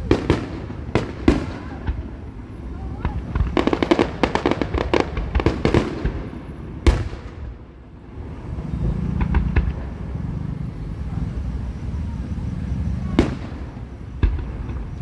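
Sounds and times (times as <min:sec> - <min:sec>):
fireworks crackling bursts: 0:00.0 - 0:15.0
loud firework bang: 0:03.0 - 0:07.6
low rumble with pops: 0:08.8 - 0:10.4, 0:13.1 - 0:15.0.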